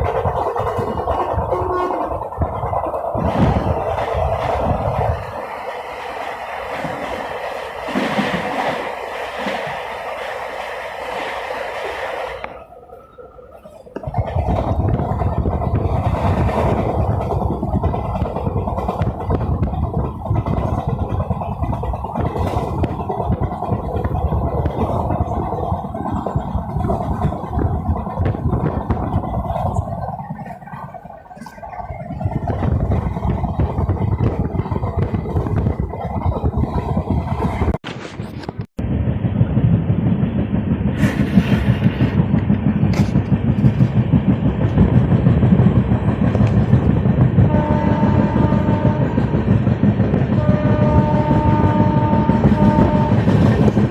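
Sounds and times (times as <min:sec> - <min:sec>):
train wheels rumbling on rails: 0:00.0 - 0:53.9
train horn: 0:01.1 - 0:02.2, 0:47.5 - 0:49.3, 0:50.3 - 0:53.5.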